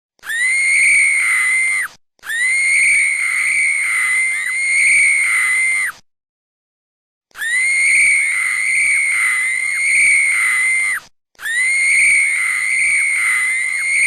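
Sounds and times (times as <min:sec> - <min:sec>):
woman screaming: 0:07.4 - 0:14.0.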